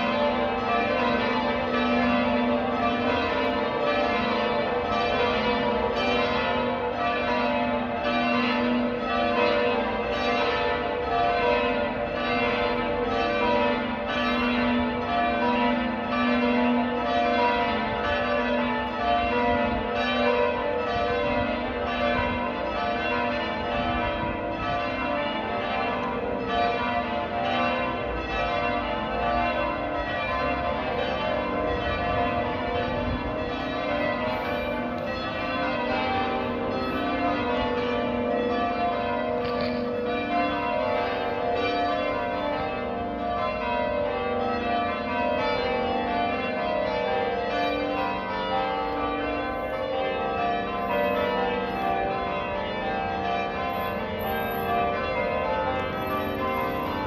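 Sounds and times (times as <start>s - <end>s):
church bells ringing changes: 0.0s - 57.0s.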